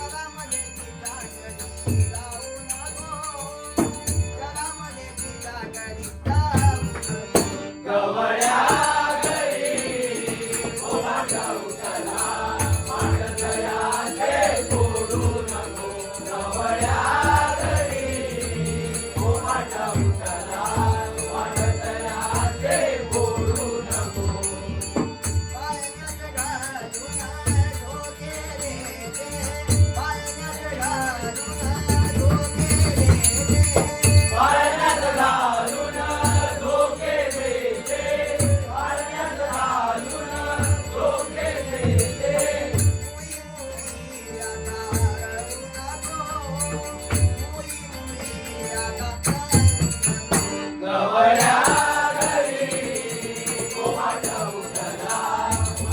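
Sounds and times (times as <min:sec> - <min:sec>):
jingling hand cymbals: 0:00.0 - 0:07.7, 0:08.4 - 0:55.9
drum beating steady rhythm: 0:05.3 - 0:07.8, 0:08.4 - 0:28.0, 0:29.6 - 0:50.7, 0:51.4 - 0:55.9
group devotional singing: 0:06.8 - 0:26.6, 0:31.6 - 0:45.5, 0:50.3 - 0:55.9.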